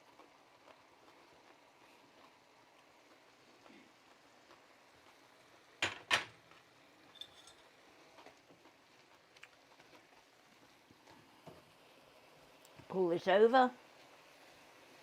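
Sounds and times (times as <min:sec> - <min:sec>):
kitchen utensils clinking: 0:07.1 - 0:07.6.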